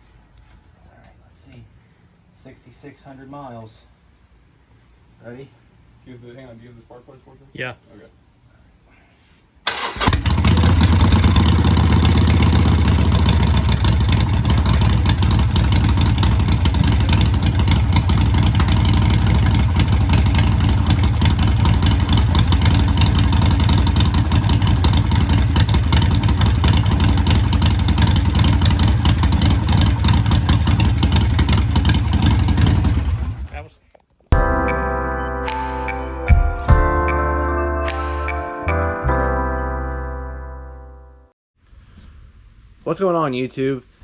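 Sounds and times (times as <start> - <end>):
motorcycle engine idling: 10.2 - 33.5.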